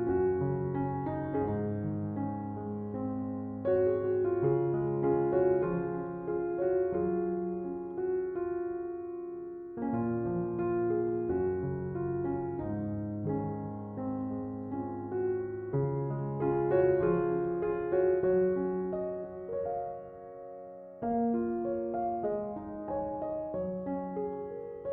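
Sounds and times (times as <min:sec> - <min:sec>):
gentle piano music: 0:00.0 - 0:24.9.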